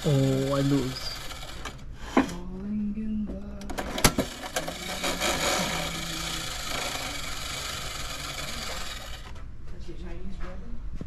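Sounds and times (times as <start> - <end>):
slot machine whirring rattle: 0.0 - 1.9, 3.7 - 9.4.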